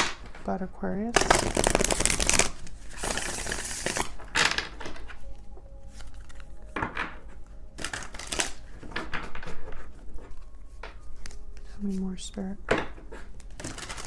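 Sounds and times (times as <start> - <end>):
cards riffling and flicking: 1.2 - 4.2, 5.9 - 6.8, 7.8 - 9.7.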